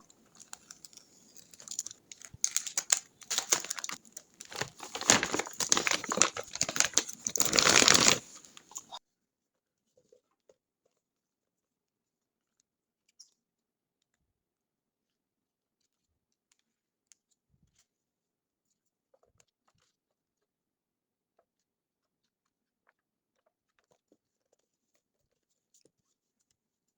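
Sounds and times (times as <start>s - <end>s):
packaging rustling: 0.0s - 9.0s.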